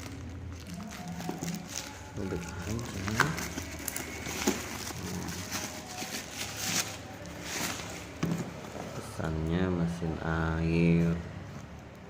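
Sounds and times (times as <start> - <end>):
packaging rustling: 0.0 - 9.2.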